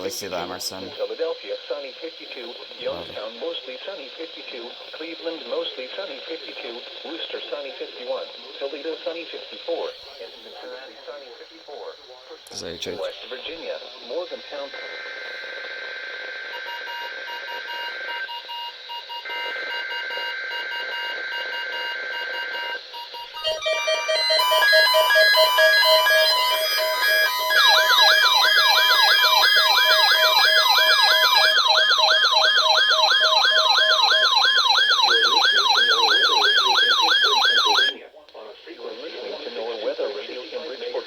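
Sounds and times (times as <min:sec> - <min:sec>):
buzzy data tones: 0:09.8 - 0:38.0
layered alarm beeping tones: 0:16.6 - 0:38.0
warbling siren-like alarm: 0:21.2 - 0:38.0.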